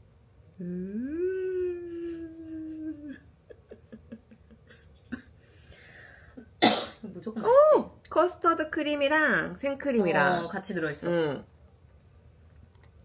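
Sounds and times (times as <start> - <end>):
woman humming mmm: 0.5 - 3.3.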